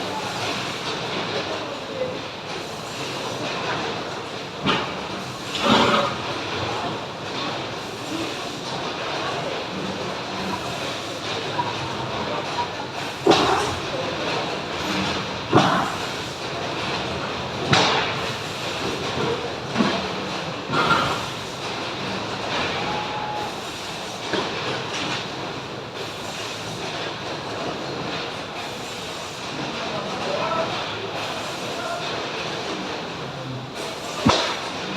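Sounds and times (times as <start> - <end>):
steady mechanical din: 33.7 - 34.9.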